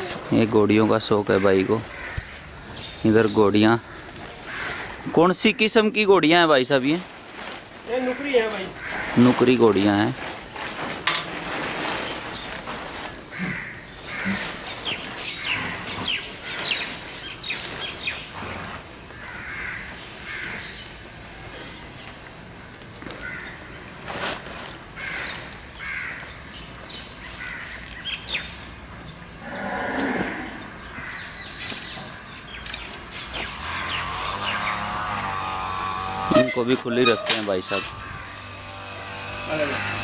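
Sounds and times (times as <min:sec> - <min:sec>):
crows cawing: 0:01.3 - 0:02.9, 0:03.8 - 0:05.2, 0:07.9 - 0:09.4, 0:13.3 - 0:16.8, 0:19.1 - 0:20.8, 0:23.1 - 0:23.8, 0:25.0 - 0:26.6, 0:27.2 - 0:27.9, 0:29.4 - 0:31.6, 0:33.6 - 0:40.0
small birds chirping: 0:13.5 - 0:18.4, 0:30.4 - 0:35.4.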